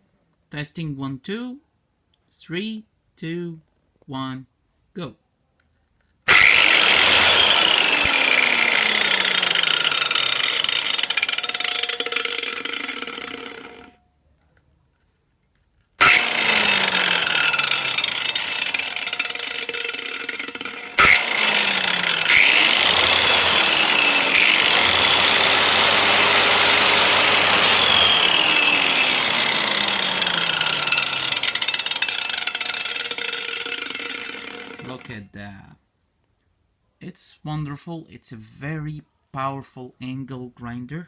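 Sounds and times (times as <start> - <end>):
angle grinder motor whine: 6.3 - 14.0, 16.0 - 35.1.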